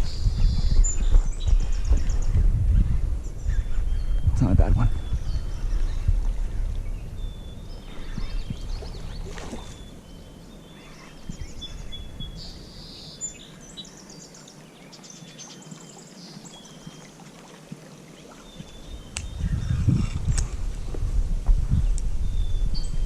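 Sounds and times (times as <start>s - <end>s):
low rumble: 0.0s - 9.9s, 19.0s - 23.0s
small birds chirping: 0.0s - 20.6s.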